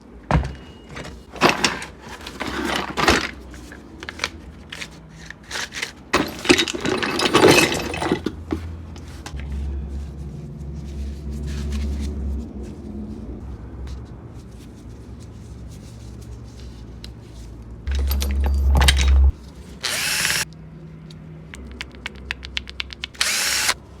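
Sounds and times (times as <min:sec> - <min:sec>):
metal tools clinking and rattling: 0:00.4 - 0:08.7, 0:17.9 - 0:19.4
low steady hum: 0:06.2 - 0:21.6.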